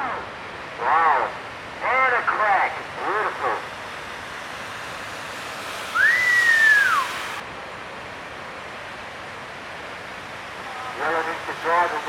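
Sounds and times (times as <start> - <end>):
surf rushing: 0.6 - 9.0
rising high whistle: 5.7 - 7.4.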